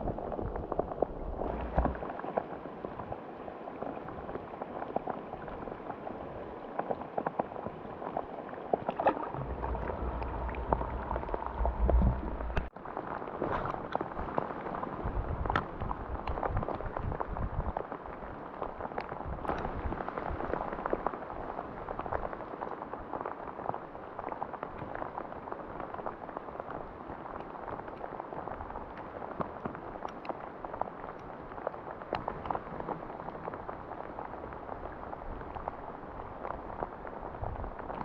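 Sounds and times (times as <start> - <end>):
steady rain falling: 0.0 - 38.0
low rumble: 1.2 - 2.0, 9.2 - 12.7.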